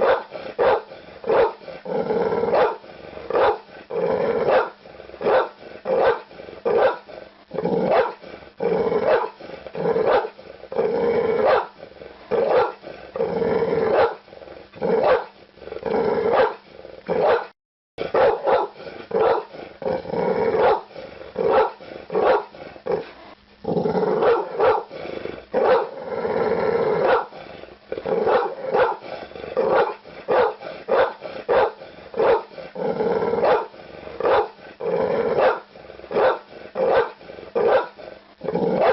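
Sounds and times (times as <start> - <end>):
dog barking: 0.0 - 1.6, 2.5 - 3.6, 4.5 - 7.1, 7.9 - 8.2, 9.1 - 9.4, 10.0 - 10.4, 11.4 - 11.8, 12.4 - 12.8, 13.9 - 14.2, 15.0 - 15.3, 16.3 - 16.6, 17.2 - 19.5, 20.6 - 22.6, 24.2 - 24.9, 25.6 - 26.0, 27.0 - 27.3, 28.2 - 29.0, 29.6 - 32.5, 33.4 - 34.6, 35.4 - 38.0.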